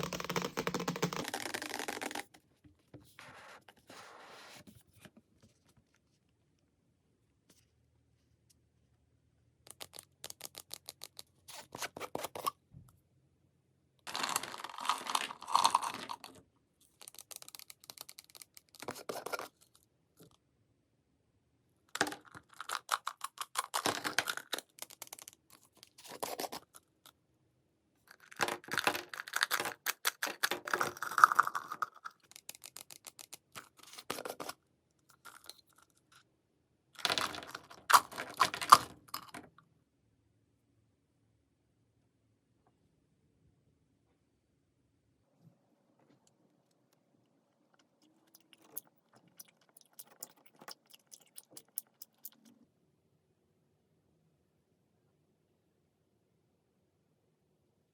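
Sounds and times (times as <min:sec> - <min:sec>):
crackly eating sounds: 0:14.1 - 0:16.4, 0:22.2 - 0:27.2, 0:28.1 - 0:36.0, 0:46.2 - 0:52.6.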